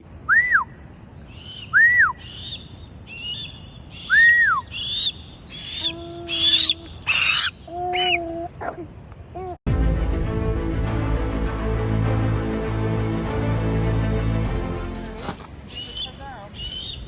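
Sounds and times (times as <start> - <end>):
bird whistled calls: 1.5 - 8.2
quick high bird chirps: 4.1 - 8.2
held low bird notes: 5.6 - 8.4.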